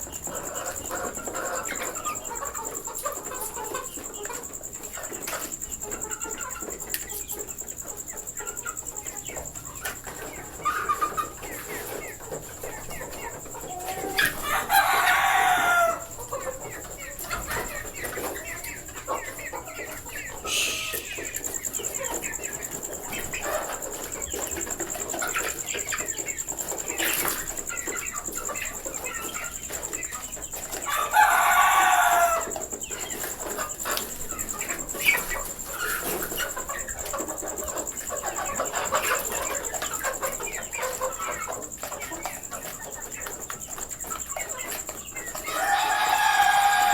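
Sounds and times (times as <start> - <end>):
chickens clucking: 0.0 - 46.9
rooster crowing: 13.6 - 16.2, 20.5 - 21.4, 30.8 - 32.6, 45.4 - 46.9.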